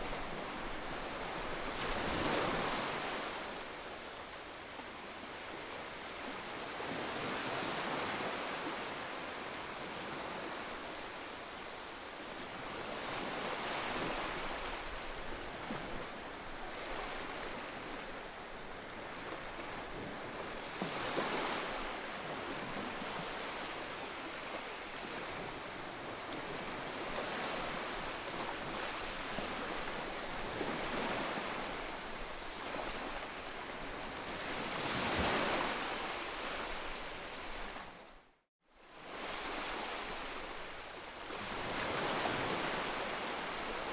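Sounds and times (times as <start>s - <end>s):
ocean waves breaking on shore: 0.0s - 43.9s.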